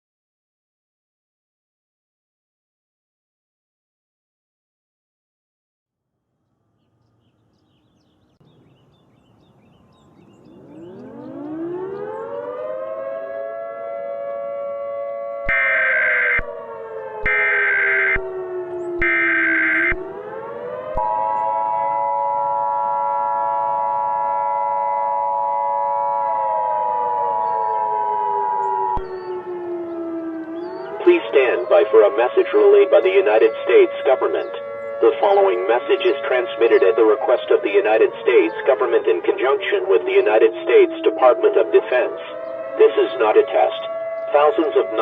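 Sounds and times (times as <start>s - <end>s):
civil defense siren: 9.9s - 45.0s.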